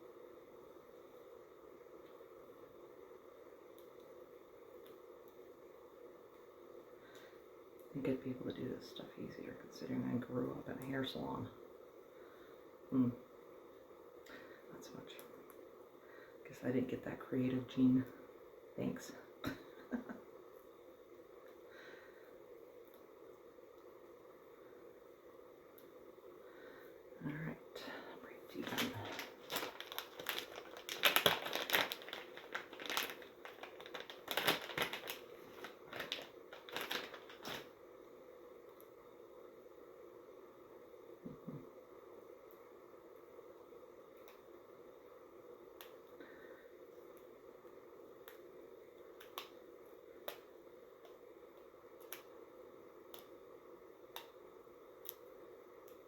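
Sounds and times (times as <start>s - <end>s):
faint room hum: 0.0s - 56.0s
hair crinkling and rustling: 28.2s - 37.8s
small sharp clicks: 49.2s - 49.6s, 50.2s - 52.3s.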